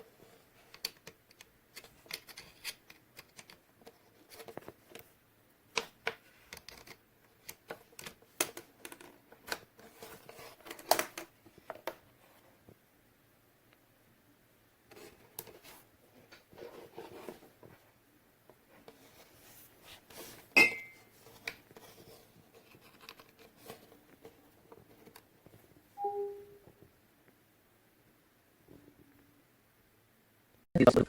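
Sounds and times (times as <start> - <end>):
soft rustling: 14.9 - 25.9
low two-note beep: 26.0 - 26.7.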